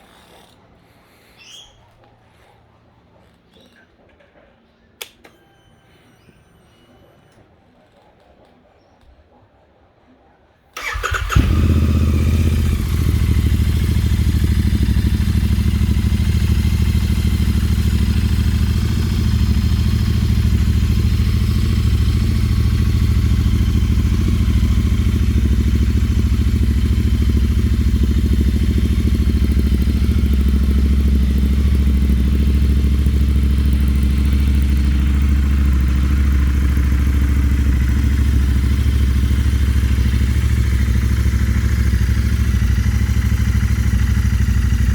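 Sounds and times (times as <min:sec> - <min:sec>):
motorcycle engine idling: 0:10.8 - 0:44.9.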